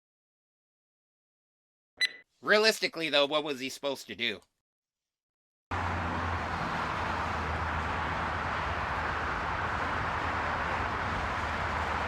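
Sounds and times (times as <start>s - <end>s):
road traffic noise: 5.7s - 12.0s.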